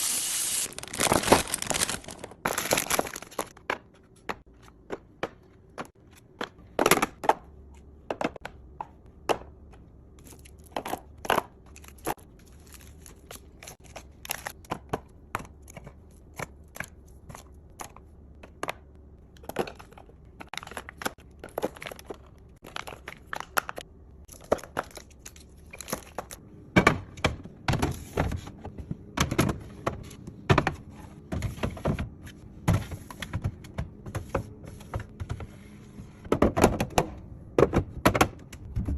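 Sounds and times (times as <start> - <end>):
crinkling snack wrappers: 0.0 - 3.5.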